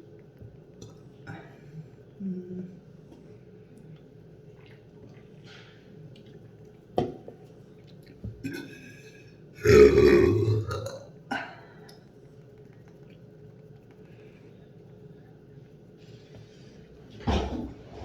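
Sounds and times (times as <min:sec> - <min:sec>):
person burping loudly: 0:09.6 - 0:11.1.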